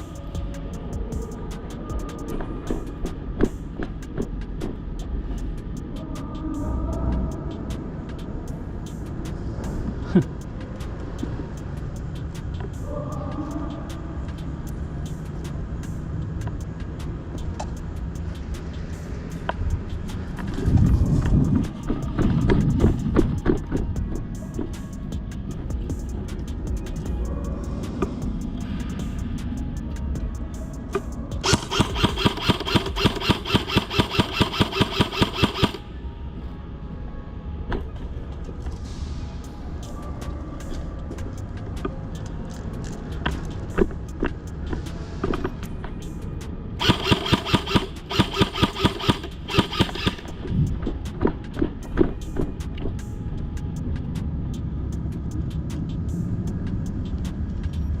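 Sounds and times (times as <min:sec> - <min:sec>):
steady low rumble: 0:00.0 - 0:46.8
mechanical whine: 0:31.3 - 0:36.2, 0:46.8 - 0:51.1
airsoft guns popping: 0:31.4 - 0:35.8, 0:46.8 - 0:50.3.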